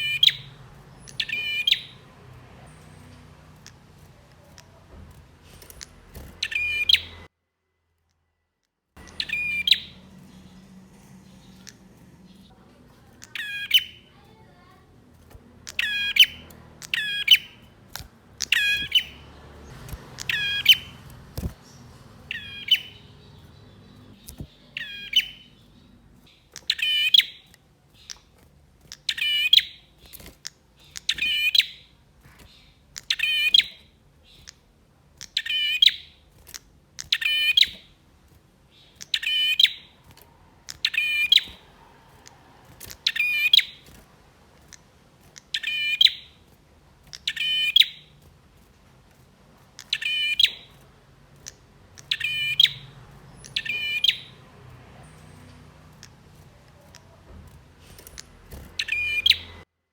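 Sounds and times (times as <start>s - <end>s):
bird singing trilled phrase: 0.0s - 4.8s, 6.2s - 7.3s, 9.0s - 17.7s, 18.4s - 28.2s, 45.5s - 46.4s, 49.8s - 50.8s, 51.4s - 54.4s, 58.2s - 59.6s.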